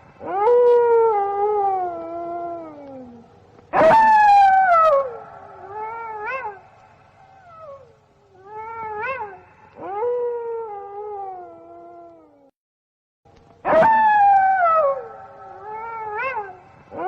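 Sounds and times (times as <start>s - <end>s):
wolves howling: 0.2s - 12.4s.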